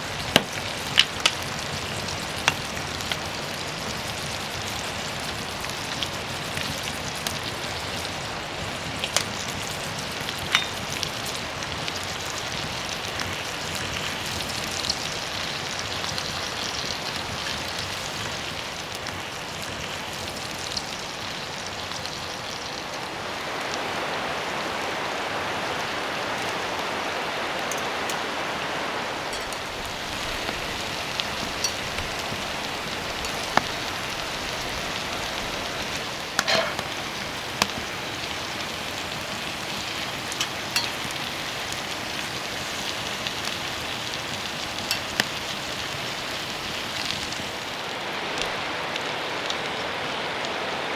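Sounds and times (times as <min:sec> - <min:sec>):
steady rain falling: 0:00.0 - 0:50.9
sharp drip-like ticks: 0:27.6 - 0:28.3, 0:29.2 - 0:39.1.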